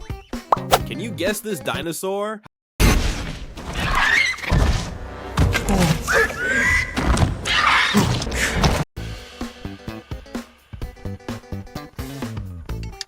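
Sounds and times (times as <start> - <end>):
upbeat rhythmic music: 0.5 - 1.0
creature screeching calls: 6.1 - 6.9, 7.5 - 8.0.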